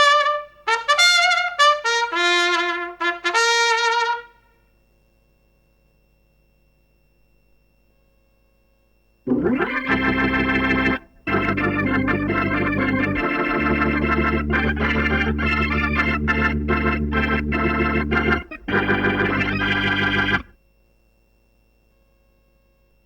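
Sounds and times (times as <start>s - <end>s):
electric organ playing: 9.3s - 20.5s.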